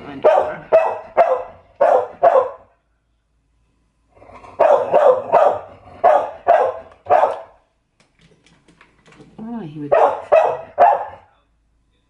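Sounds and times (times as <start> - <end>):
dog barking: 0.2 - 2.8, 4.6 - 7.6, 9.9 - 11.3.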